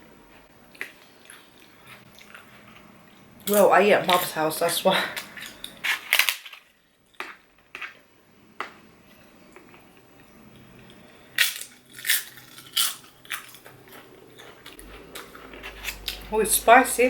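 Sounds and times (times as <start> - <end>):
crisp food crunching: 10.8 - 16.3.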